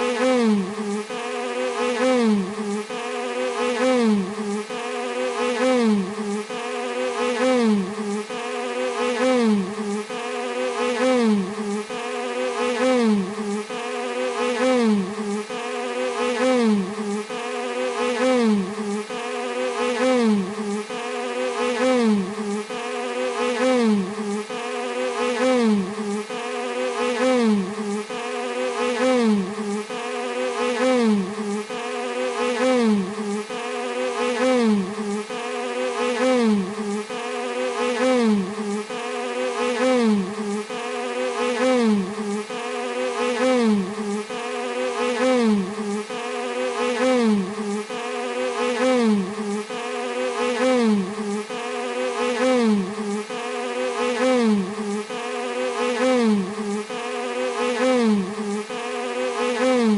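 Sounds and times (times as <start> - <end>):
bees buzzing: 0.0 - 59.9.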